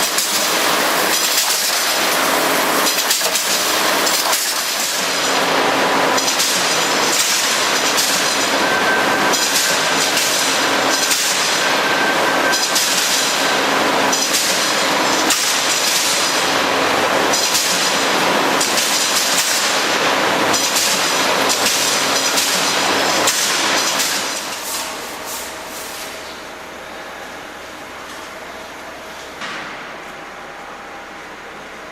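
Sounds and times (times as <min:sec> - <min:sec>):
wire cutting machine clattering: 0:00.0 - 0:24.9.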